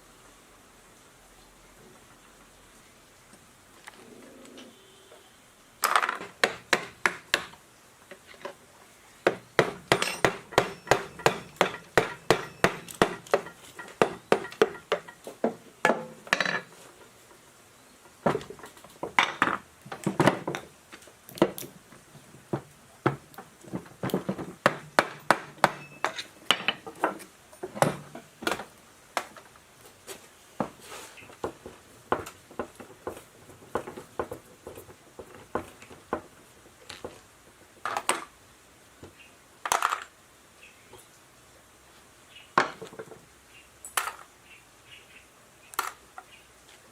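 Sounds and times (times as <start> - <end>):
metal tools clinking: 9.9 - 15.2, 25.6 - 26.9.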